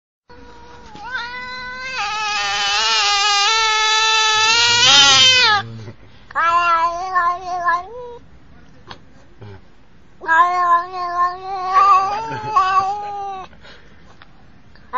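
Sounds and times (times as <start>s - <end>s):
cat yowling: 0.3s - 5.7s, 6.4s - 8.2s, 10.2s - 13.5s.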